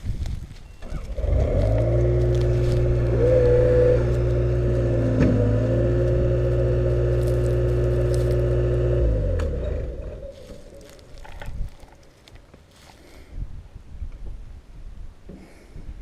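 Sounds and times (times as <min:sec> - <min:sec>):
engine running: 0:00.8 - 0:12.0.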